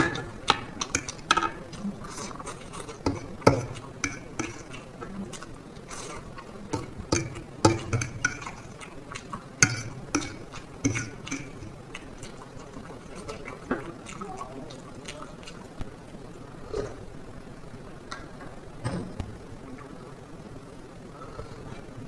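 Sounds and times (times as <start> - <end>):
utensil clicking against dish: 0.0 - 15.9
chewing and slurping: 0.0 - 17.1.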